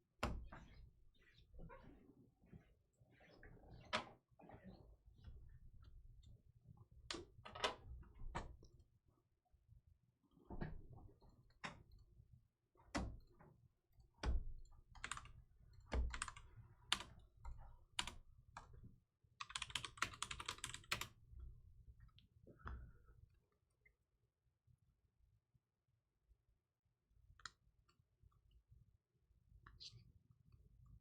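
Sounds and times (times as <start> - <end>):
typing on computer keyboard: 14.9 - 15.3, 15.9 - 17.1, 17.9 - 18.2, 19.4 - 21.2.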